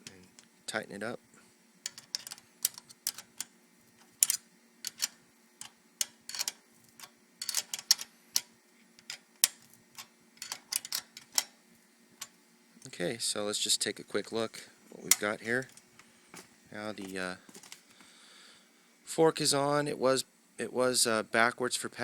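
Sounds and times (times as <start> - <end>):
metal wrench clicking on nut: 1.8 - 3.5, 4.2 - 11.5.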